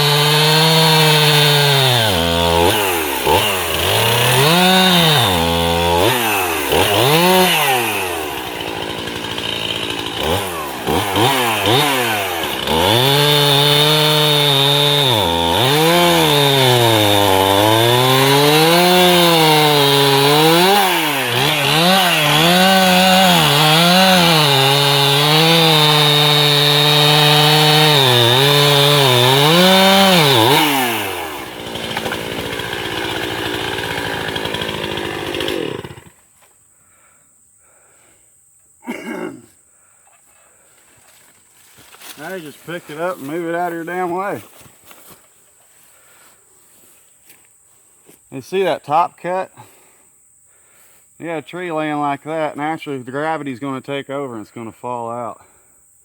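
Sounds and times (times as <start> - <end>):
chainsaw cutting wood: 0.0 - 36.5, 40.9 - 47.4.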